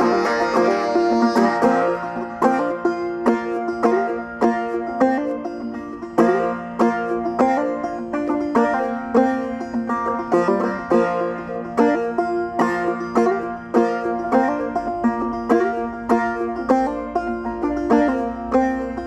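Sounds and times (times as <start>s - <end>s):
banjo playing: 0.0s - 19.0s.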